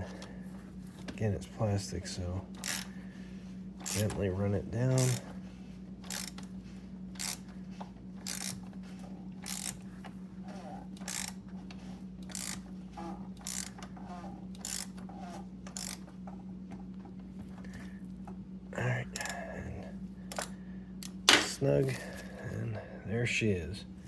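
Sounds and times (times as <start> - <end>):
ratchet clicking: 2.6 - 2.9, 3.8 - 4.2, 5.0 - 5.2, 6.0 - 6.5, 7.2 - 7.4, 8.2 - 8.6, 9.4 - 9.8, 11.0 - 11.4, 12.2 - 12.6, 13.4 - 13.8, 14.6 - 15.0, 15.7 - 16.0.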